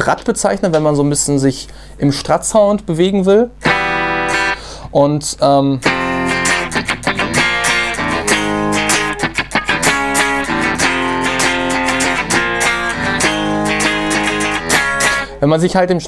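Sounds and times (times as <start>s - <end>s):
electric guitar strummed chords: 3.6s - 4.8s, 5.8s - 15.4s.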